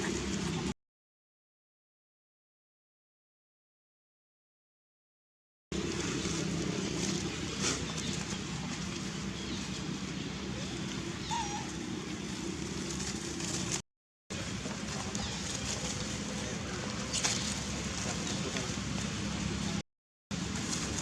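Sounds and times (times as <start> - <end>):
low hum: 5.8 - 19.8
animal call: 11.1 - 12.2.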